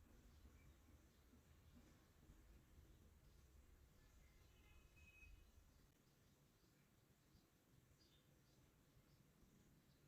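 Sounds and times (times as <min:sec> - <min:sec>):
faint high tones: 0:04.6 - 0:05.5.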